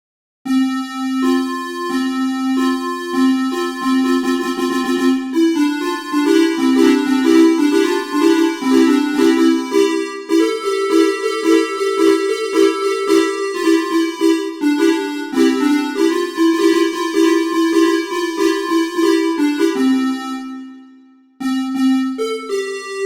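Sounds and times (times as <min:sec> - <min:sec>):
musical horn playing melody: 0:00.5 - 0:22.9.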